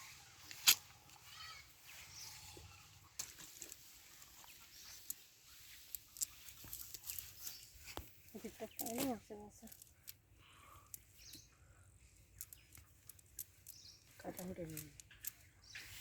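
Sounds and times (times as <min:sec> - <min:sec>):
quiet rural background: 0:00.0 - 0:16.0
small clicks: 0:12.4 - 0:15.5.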